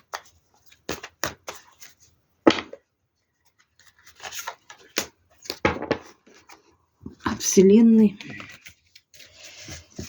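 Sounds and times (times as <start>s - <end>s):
cards rustling and slapping: 0.0s - 2.8s, 3.4s - 6.7s.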